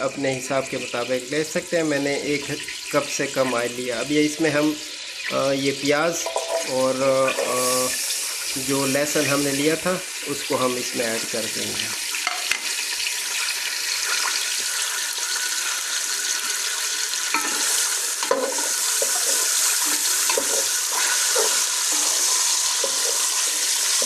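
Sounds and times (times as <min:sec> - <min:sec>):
onion sizzling in oil: 0:00.0 - 0:24.0
utensil knocking pan: 0:06.2 - 0:07.5, 0:17.3 - 0:24.0.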